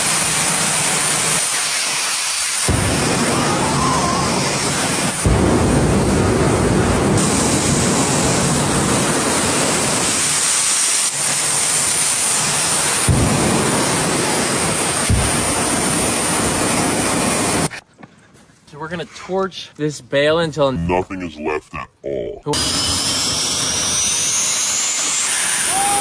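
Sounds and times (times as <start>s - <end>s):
jet engine roaring: 2.7s - 10.7s, 22.6s - 26.0s.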